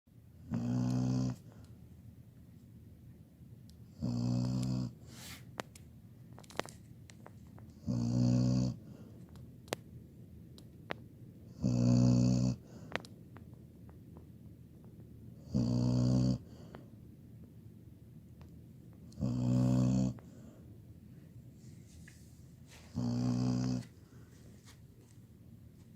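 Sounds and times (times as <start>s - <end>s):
dog snoring: 0.4s - 1.6s, 3.9s - 5.3s, 7.7s - 9.1s, 11.5s - 13.0s, 15.4s - 16.9s, 19.1s - 20.6s, 22.8s - 24.2s.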